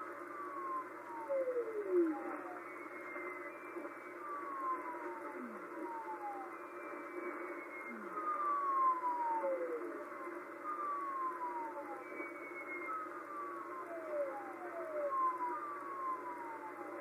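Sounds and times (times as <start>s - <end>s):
radio static hiss: 0.0s - 17.0s.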